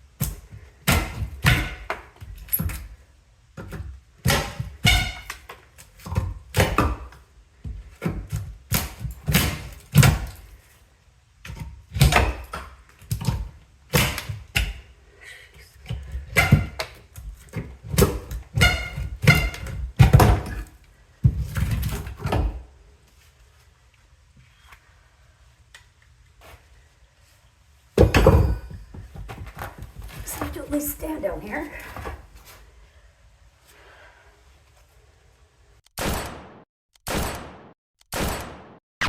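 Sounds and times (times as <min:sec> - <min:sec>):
wooden knocks and thunks: 0:15.9 - 0:22.6, 0:28.0 - 0:30.8.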